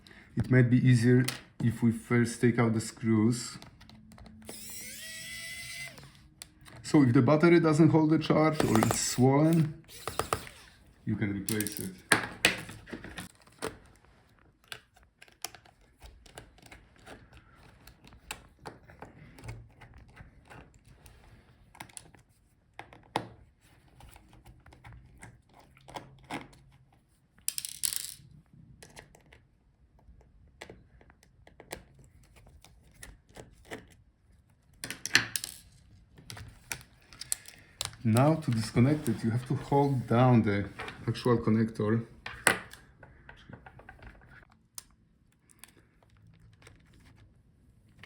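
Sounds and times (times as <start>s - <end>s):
small screws clicking: 4.4s - 6.7s, 8.6s - 10.8s
screwdriver light taps: 9.6s - 10.6s.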